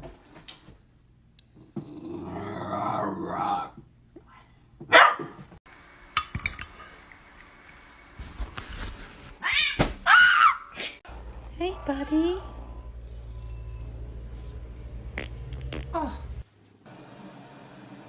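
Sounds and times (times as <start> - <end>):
dog growling: 1.6 - 3.7, 11.0 - 13.2
dog barking: 4.9 - 5.4.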